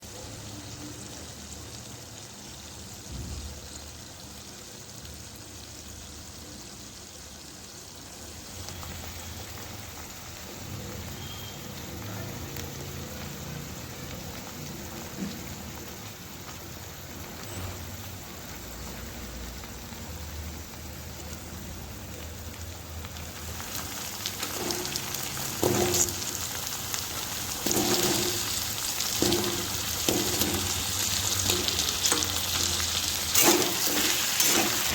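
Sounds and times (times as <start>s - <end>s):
food sizzling in a pan: 0.0s - 34.9s
spatula knocking and scraping pan: 24.5s - 26.3s, 27.6s - 34.9s.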